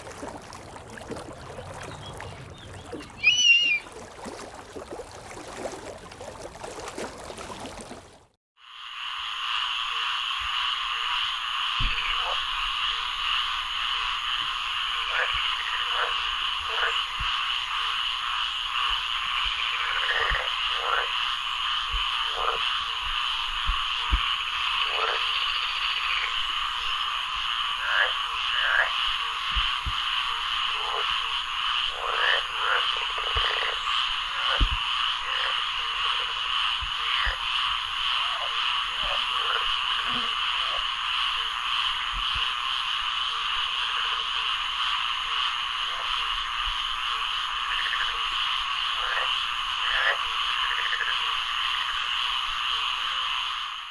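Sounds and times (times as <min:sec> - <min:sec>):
frogs trilling: 0:00.9 - 0:04.1, 0:08.6 - 0:53.9
low frog croaks: 0:08.7 - 0:53.9.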